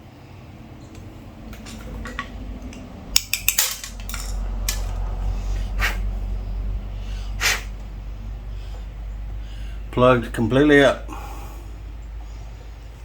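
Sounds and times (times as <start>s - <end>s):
low steady hum: 0.0s - 13.0s
metal tools clinking on workbench: 3.2s - 5.0s.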